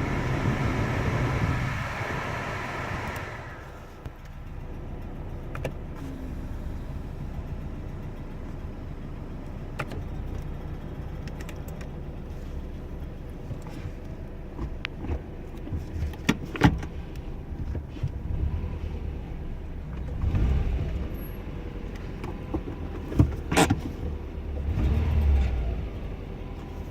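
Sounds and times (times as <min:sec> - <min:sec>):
car engine idling: 0:00.0 - 0:16.1.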